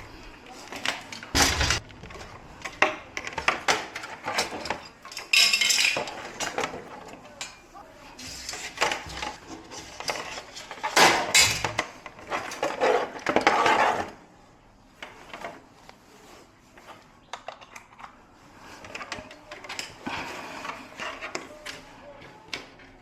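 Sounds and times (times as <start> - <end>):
hard objects clattering: 0.0 - 14.2.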